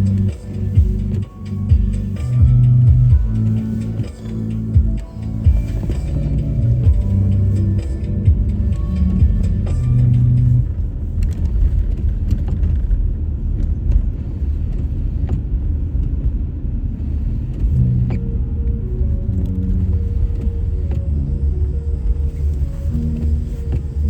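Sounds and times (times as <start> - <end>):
soft music: 0.0 - 11.2, 17.7 - 24.0
car tyres and engine rumble: 0.0 - 24.0.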